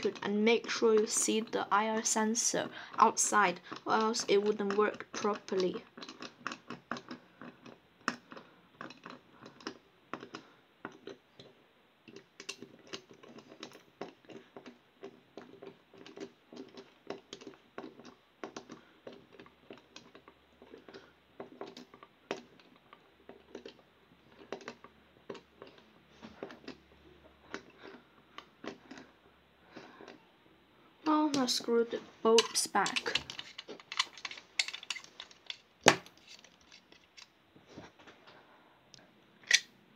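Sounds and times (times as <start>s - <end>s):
plastic casing being handled: 32.4s - 37.3s.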